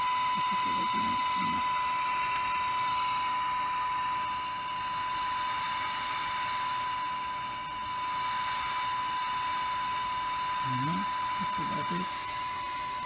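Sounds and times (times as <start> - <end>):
whistle-like radio tone: 0.1 - 13.0.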